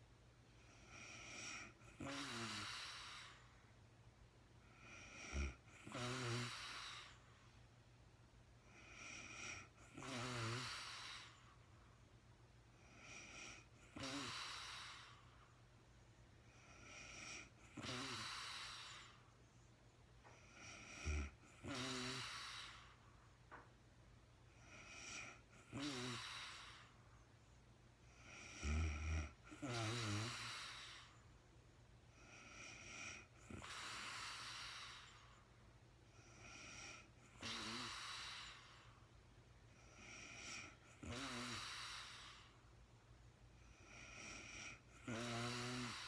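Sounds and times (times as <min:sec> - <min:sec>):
woman snoring: 0:00.7 - 0:03.5, 0:04.6 - 0:07.2, 0:08.7 - 0:11.5, 0:12.8 - 0:15.2, 0:16.5 - 0:19.2, 0:20.3 - 0:23.0, 0:24.6 - 0:27.0, 0:28.1 - 0:31.2, 0:32.2 - 0:35.4, 0:36.2 - 0:38.9, 0:39.8 - 0:42.6, 0:43.7 - 0:46.0.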